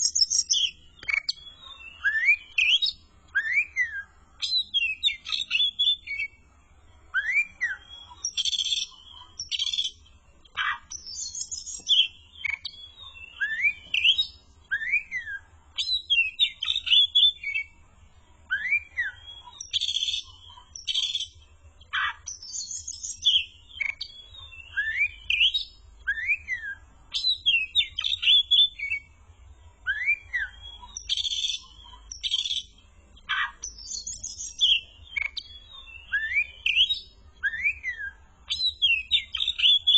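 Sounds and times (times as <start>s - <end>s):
songbird singing: 0.0s - 39.9s.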